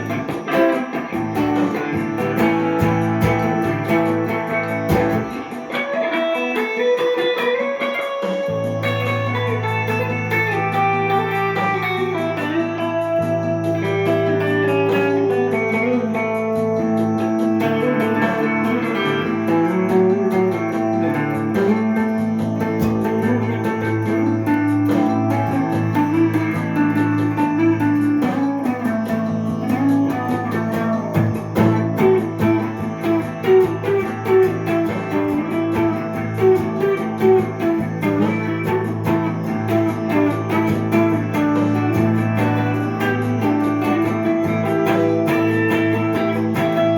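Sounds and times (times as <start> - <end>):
electric guitar melody: 0.0 - 46.9.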